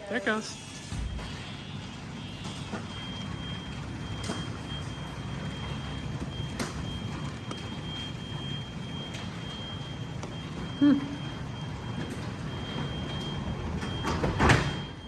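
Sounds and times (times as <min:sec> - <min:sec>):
fire alarm high-pitched tone: 0:00.1 - 0:15.0.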